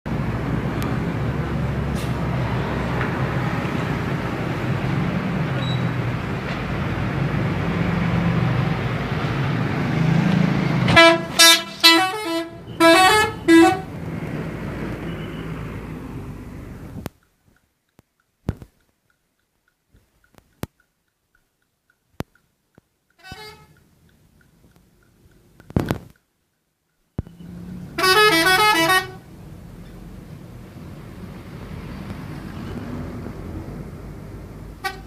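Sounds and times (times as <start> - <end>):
bus engine running: 0.1 - 17.2, 27.2 - 35.0
multi-tone horn melody: 10.9 - 13.9, 23.2 - 23.8, 27.9 - 29.3, 34.8 - 35.0.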